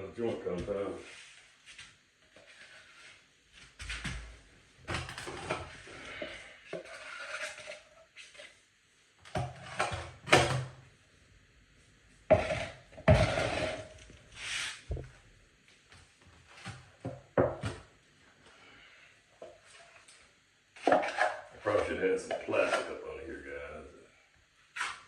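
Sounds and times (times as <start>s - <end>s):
metal knife scraping a pan: 5.3s - 8.6s, 12.3s - 14.8s, 20.8s - 23.0s.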